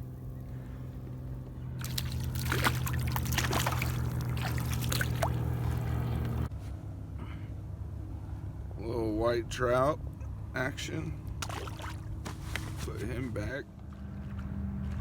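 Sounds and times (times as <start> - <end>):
steady low hum: 0.0 - 15.0
water splashing near kayak: 1.7 - 6.5, 11.4 - 12.9.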